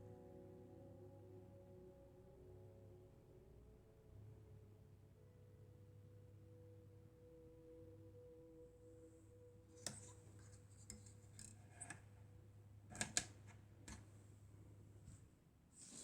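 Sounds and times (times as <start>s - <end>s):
faint steady hum: 0.0s - 16.0s
light clicks and taps: 9.8s - 12.1s, 12.9s - 14.2s.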